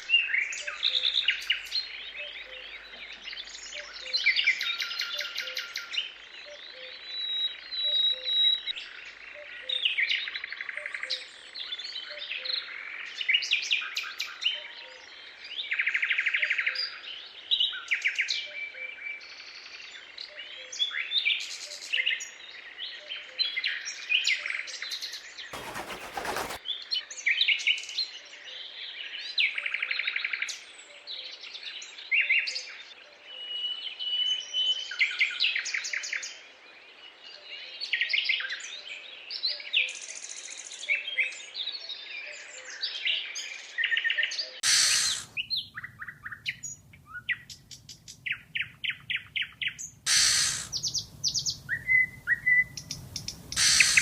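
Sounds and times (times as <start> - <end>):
birds chirping in chorus: 25.6 - 26.6, 44.6 - 54.0
rapid short bird chirps: 25.6 - 26.6, 52.8 - 54.0.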